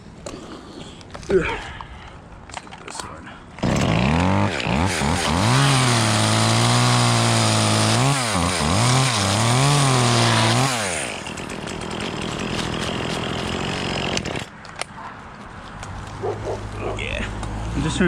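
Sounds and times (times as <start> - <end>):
chainsaw running at high revs: 3.6 - 14.5
chainsaw cutting wood: 3.6 - 14.6.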